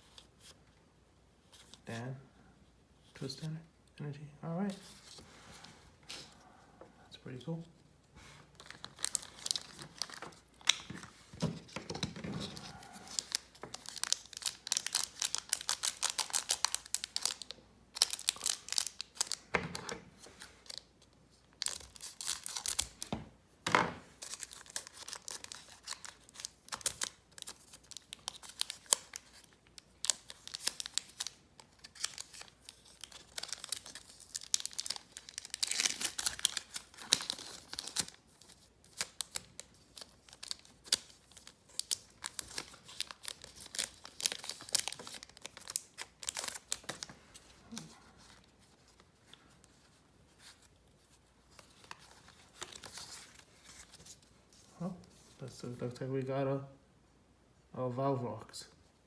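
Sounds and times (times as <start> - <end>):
cards being handled: 8.2 - 55.4
foil wrapper crinkling and tearing: 8.5 - 11.3, 11.9 - 19.5, 20.2 - 23.1, 24.2 - 49.8, 50.4 - 54.7.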